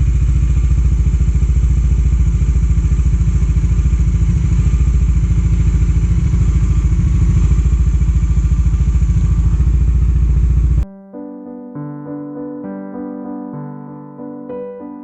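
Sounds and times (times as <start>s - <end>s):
motorcycle engine running: 0.0s - 10.8s.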